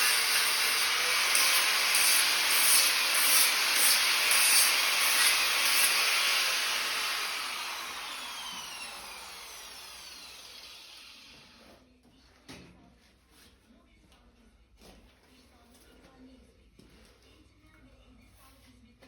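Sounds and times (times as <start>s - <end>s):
angle grinder on steel: 0.0s - 11.6s
grinder winding down: 0.0s - 11.6s.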